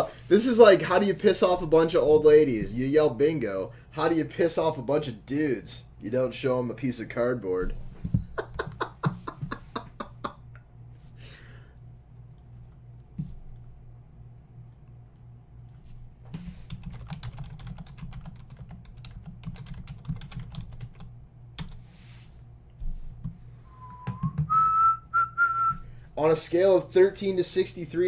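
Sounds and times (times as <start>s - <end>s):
low electrical hum: 0.0s - 28.0s
typing on keyboard: 16.7s - 21.8s.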